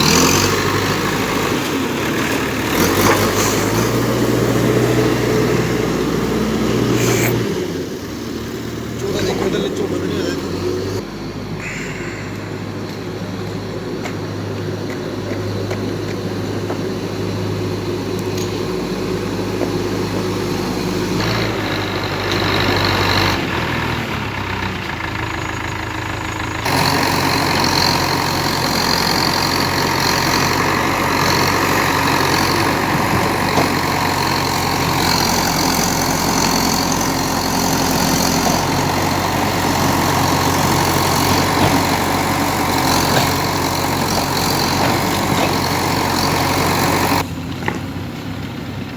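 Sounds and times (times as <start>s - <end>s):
heavy diesel engine running: 0.0s - 48.9s
high whines: 9.0s - 15.1s.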